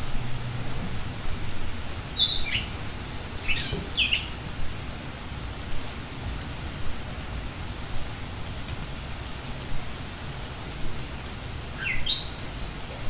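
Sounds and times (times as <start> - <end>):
steady rain: 0.0 - 13.0
bird chirping: 2.2 - 4.3.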